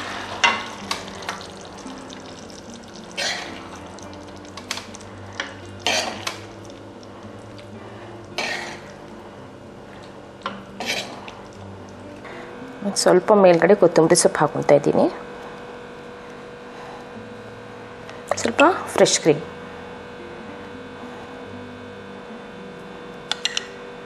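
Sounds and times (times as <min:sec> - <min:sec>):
faint background music: 0:00.0 - 0:24.0
spoon scraping a pan: 0:04.6 - 0:06.4, 0:08.4 - 0:08.9, 0:10.5 - 0:11.4.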